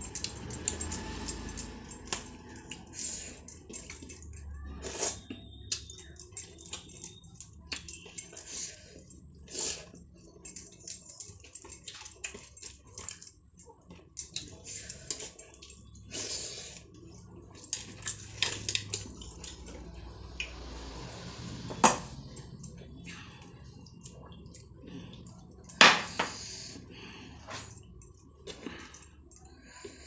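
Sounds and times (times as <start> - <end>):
person chewing: 0.0 - 20.6.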